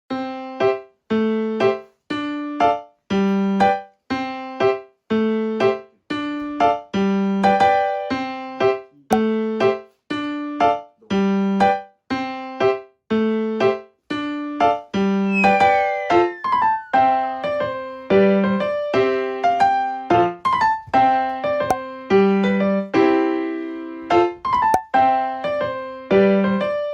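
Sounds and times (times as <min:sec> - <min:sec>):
bouncy electric piano music: 0:15.3 - 0:19.4.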